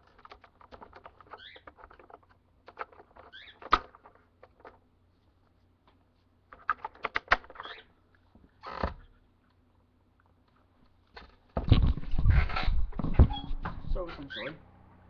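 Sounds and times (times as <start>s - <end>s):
plastic attachments clicking and knocking: 0.0s - 4.8s, 6.5s - 7.8s.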